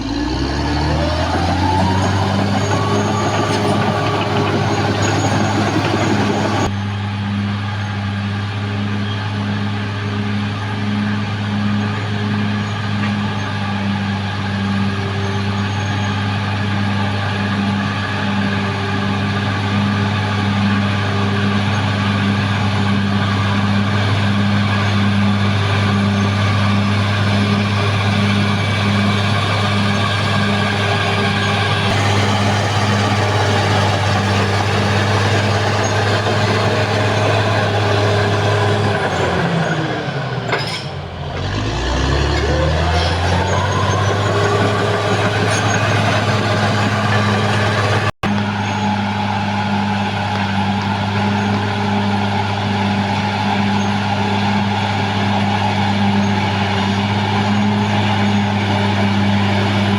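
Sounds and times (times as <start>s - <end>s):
loud high clatter: 0.0s - 6.7s, 21.9s - 54.9s
bulldozer diesel engine: 0.0s - 59.9s.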